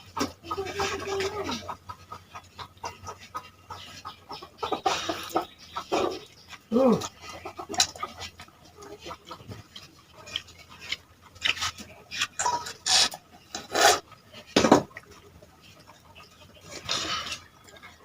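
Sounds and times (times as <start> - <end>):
scraping against dishes: 11.5 - 14.9.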